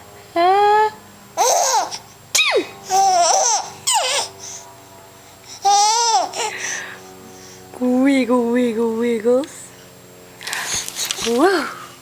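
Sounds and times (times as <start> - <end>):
baby laughing: 1.4 - 2.0, 2.9 - 4.3, 5.6 - 6.8.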